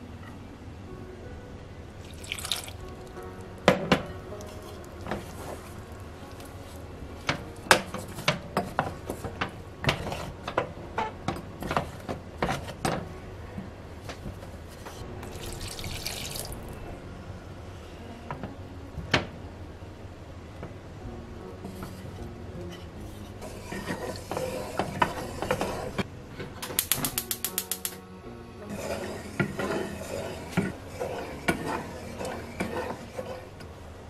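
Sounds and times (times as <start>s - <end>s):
running water splash: 2.1s - 2.9s, 15.2s - 16.8s
utensils and dishes clicking: 26.6s - 28.0s.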